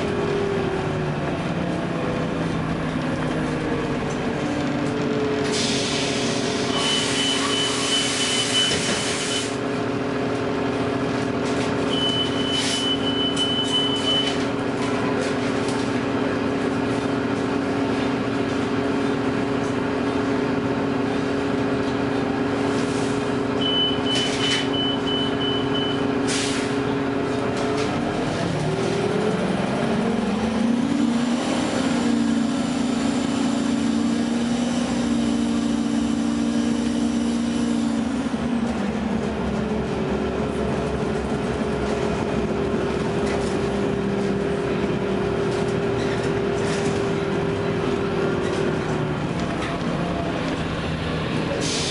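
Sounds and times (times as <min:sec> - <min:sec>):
bus drive whining: 0:00.0 - 0:51.9
air hissing out: 0:05.5 - 0:09.6, 0:51.6 - 0:51.9.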